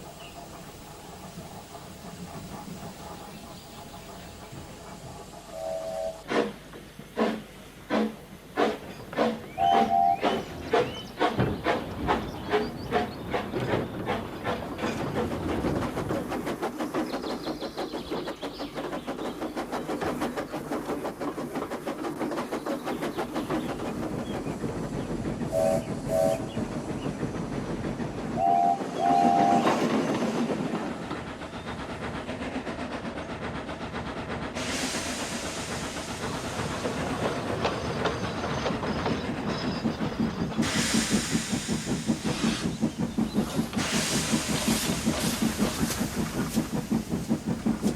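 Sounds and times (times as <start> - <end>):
hissing steam: 0.0 - 47.9
steam locomotive chuffing: 0.0 - 47.9
two-note train whistle toots: 5.5 - 6.5, 9.6 - 10.4, 28.4 - 29.8.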